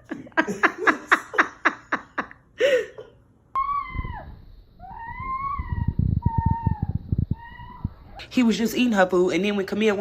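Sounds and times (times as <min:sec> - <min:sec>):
person laughing: 0:00.0 - 0:03.2
high-pitched animal call: 0:03.6 - 0:08.2.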